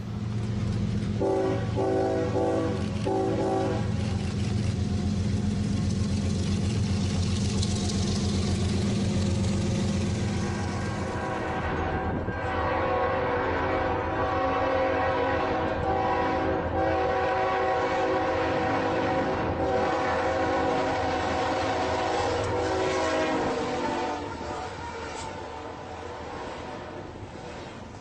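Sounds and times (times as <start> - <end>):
moving train rumble: 0.0 - 28.0
train horn chord: 1.2 - 4.1, 10.2 - 27.2.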